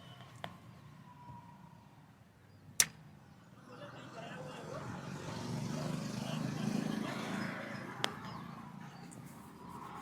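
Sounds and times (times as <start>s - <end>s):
sharp click: 2.8s - 3.0s
vehicle passing: 3.6s - 10.0s.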